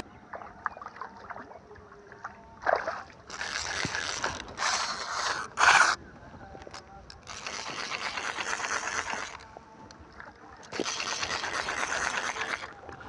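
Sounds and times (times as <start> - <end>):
fishing reel clicking: 3.3 - 6.0, 6.6 - 9.4, 10.6 - 12.8
fish splashing water: 10.7 - 12.7.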